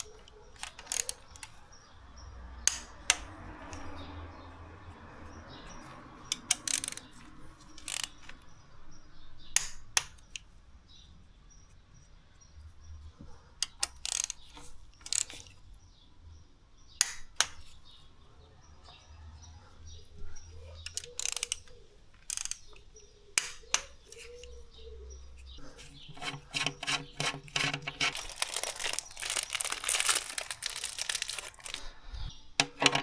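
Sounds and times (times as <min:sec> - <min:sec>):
metal tools clicking: 0:00.0 - 0:01.8, 0:02.6 - 0:04.1, 0:06.2 - 0:08.5, 0:09.5 - 0:10.5, 0:13.6 - 0:15.6, 0:20.4 - 0:24.6, 0:25.4 - 0:33.0.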